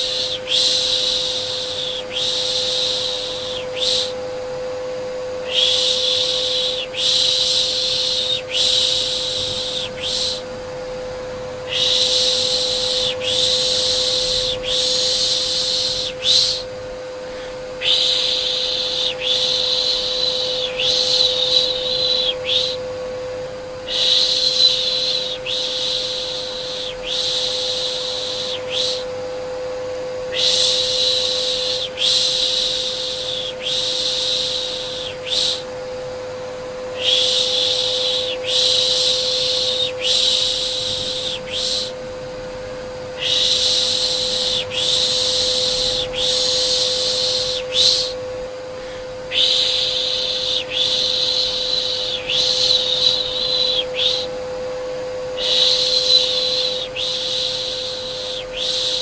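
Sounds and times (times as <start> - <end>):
vacuum cleaner humming: 0.0 - 59.0
person shushing: 5.4 - 10.5, 17.3 - 22.8, 37.0 - 42.0, 48.8 - 54.3.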